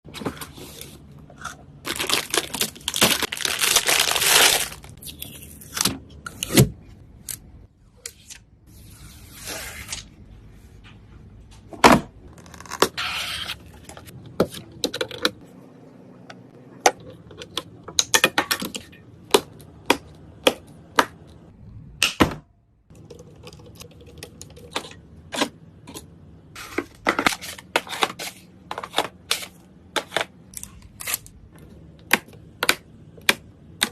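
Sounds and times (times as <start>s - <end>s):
packaging rustling and tearing: 1.9s - 5.8s.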